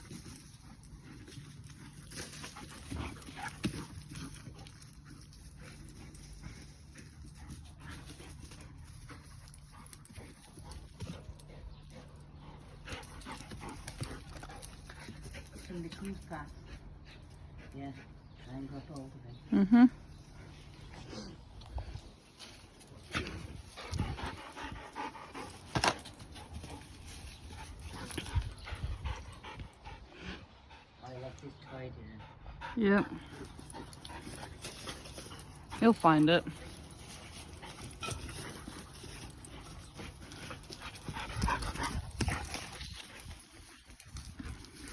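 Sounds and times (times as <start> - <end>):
dog claws clicking and scuffling: 0.0 - 16.4, 33.3 - 44.9.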